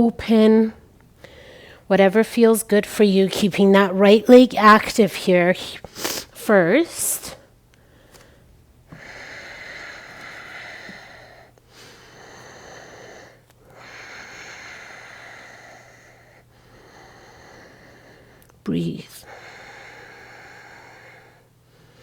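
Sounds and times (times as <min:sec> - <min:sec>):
person breathing deeply: 0:07.8 - 0:18.4, 0:19.2 - 0:22.0.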